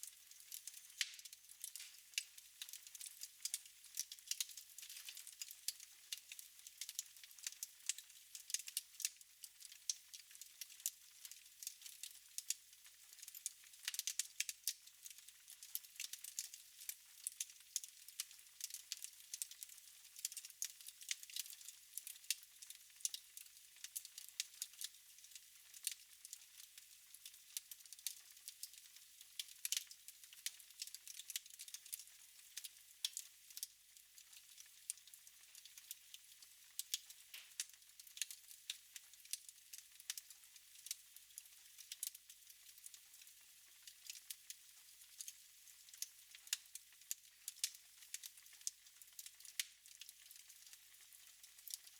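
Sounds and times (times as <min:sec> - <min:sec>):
wood fire crackling: 0:00.0 - 0:44.4, 0:45.0 - 0:51.9
sharp popping of fire: 0:00.5 - 0:05.5, 0:36.8 - 0:38.3.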